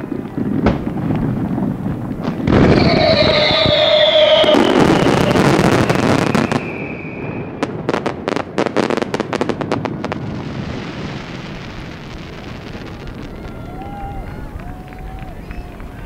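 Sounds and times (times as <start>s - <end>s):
high fireworks whistle: 0.0s - 9.0s, 10.4s - 16.0s
fireworks bursting and crackling: 0.0s - 16.0s.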